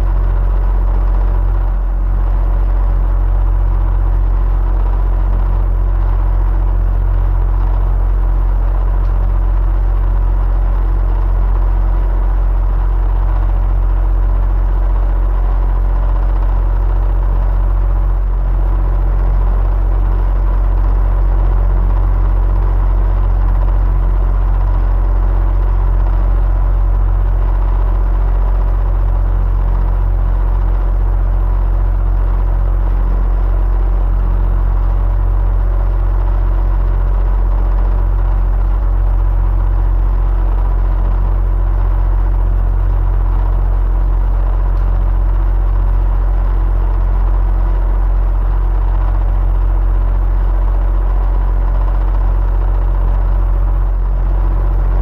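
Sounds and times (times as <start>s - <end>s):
electric fan whirring: 0.0s - 34.2s, 53.9s - 55.0s.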